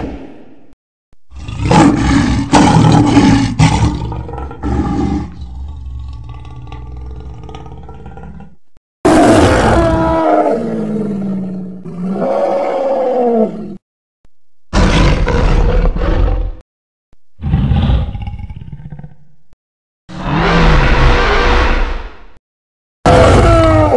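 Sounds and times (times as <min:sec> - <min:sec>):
dinosaur roars: 0:01.3 - 0:08.5, 0:09.1 - 0:13.8, 0:14.8 - 0:16.6, 0:17.4 - 0:19.1, 0:20.1 - 0:21.9, 0:23.1 - 0:23.9.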